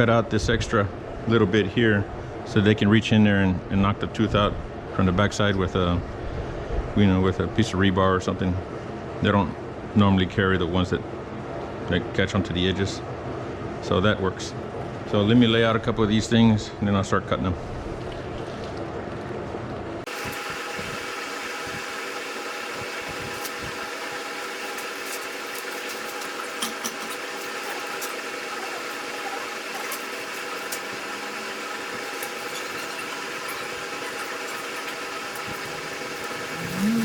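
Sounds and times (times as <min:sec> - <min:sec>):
machine hum: 0:17.6 - 0:37.0.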